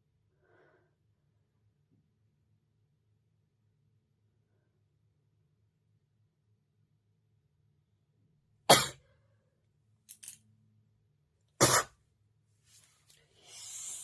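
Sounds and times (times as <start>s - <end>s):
woman sneezing: 11.6s - 11.9s
faint sniffs: 13.2s - 14.0s
breathy nasal exhale: 13.4s - 14.0s.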